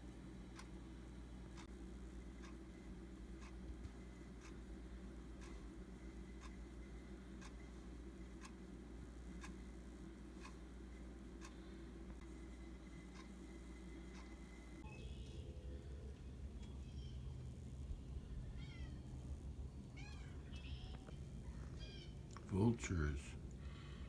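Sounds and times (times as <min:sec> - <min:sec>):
low steady hum: 0:00.0 - 0:24.0
faint ticks: 0:02.4 - 0:02.6, 0:07.4 - 0:07.8, 0:13.1 - 0:13.3, 0:14.1 - 0:14.5.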